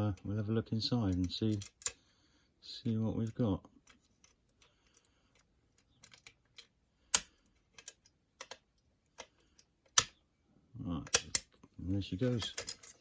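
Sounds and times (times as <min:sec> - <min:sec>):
metallic clicks and scratches in lock: 0:00.0 - 0:02.0, 0:03.1 - 0:10.2, 0:11.1 - 0:11.6, 0:12.2 - 0:13.0.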